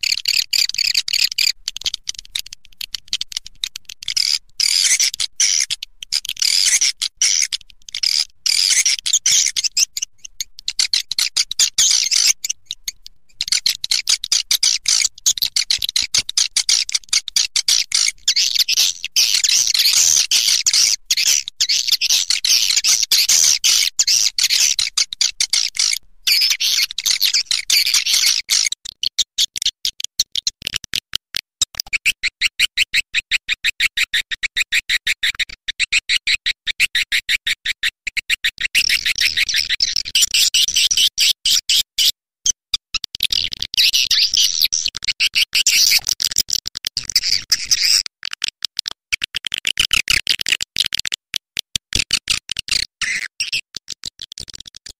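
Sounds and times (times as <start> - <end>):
fast sharp clicks: 0.0 - 26.0.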